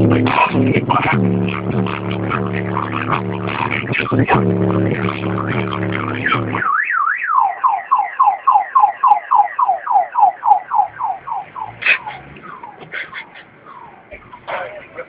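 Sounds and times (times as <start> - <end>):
rap music with heavy bass: 0.0 - 6.8, 11.6 - 15.0
car alarm: 6.2 - 14.9.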